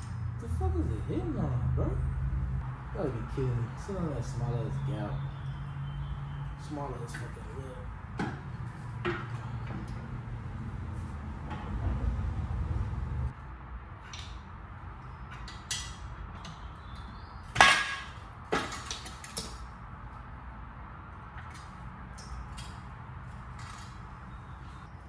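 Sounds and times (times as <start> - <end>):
metal tools clanking: 7.0 - 7.6, 15.1 - 19.4.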